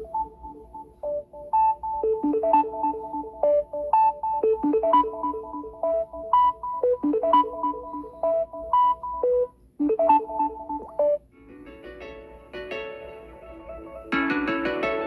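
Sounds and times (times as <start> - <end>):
electronic ringtone melody: 0.0 - 11.2.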